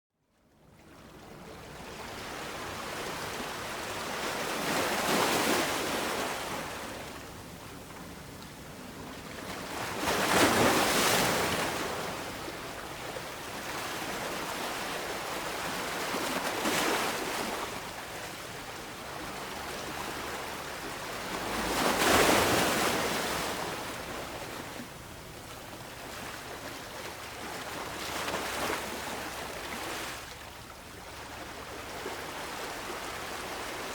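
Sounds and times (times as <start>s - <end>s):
ocean waves breaking on shore: 0.8s - 33.9s.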